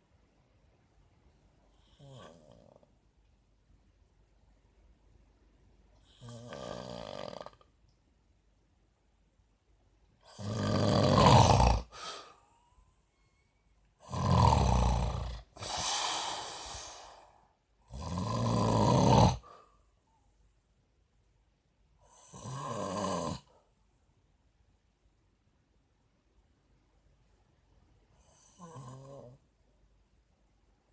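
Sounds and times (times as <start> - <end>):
man snoring: 1.8 - 2.9, 6.0 - 7.7, 10.2 - 12.3, 14.0 - 17.3, 17.9 - 19.6, 22.0 - 23.5, 28.2 - 29.4
soft breath out: 11.9 - 13.6, 15.6 - 17.6.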